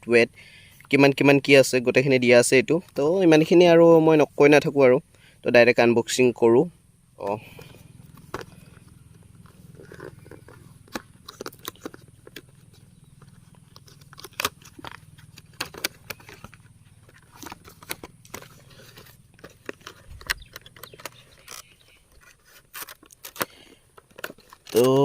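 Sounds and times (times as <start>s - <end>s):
cardboard box crinkly rustles: 8.2s - 23.4s.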